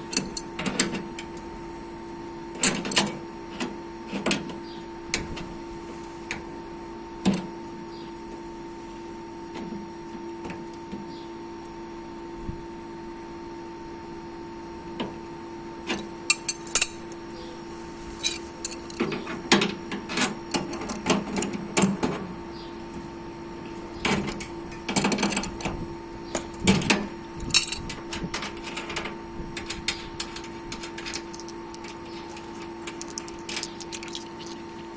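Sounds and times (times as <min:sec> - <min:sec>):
steady electrical hum: 0:00.0 - 0:34.9
objects clicking and rattling: 0:18.1 - 0:19.2, 0:29.6 - 0:34.9.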